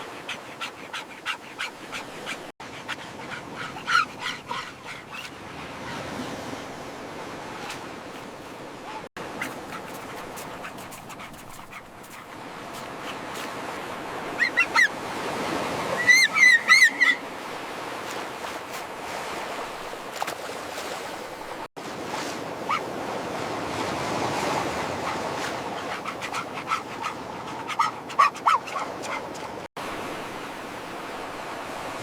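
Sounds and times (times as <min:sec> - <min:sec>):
ocean surf washing on beach: 0:00.0 - 0:32.0
high arching animal cries: 0:00.2 - 0:05.3, 0:14.4 - 0:15.0, 0:16.0 - 0:17.3, 0:25.8 - 0:29.4.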